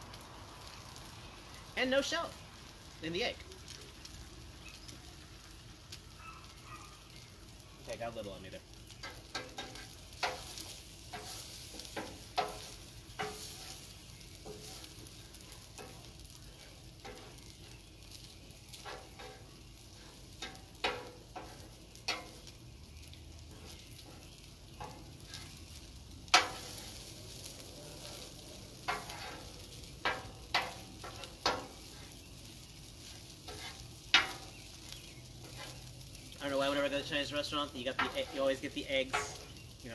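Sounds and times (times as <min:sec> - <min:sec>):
food sizzling on a griddle: 0:00.0 - 0:39.9
metal spatulas scraping and clacking: 0:09.0 - 0:13.8, 0:18.7 - 0:19.5, 0:28.9 - 0:32.1, 0:33.5 - 0:34.4, 0:35.4 - 0:35.8, 0:37.8 - 0:39.5.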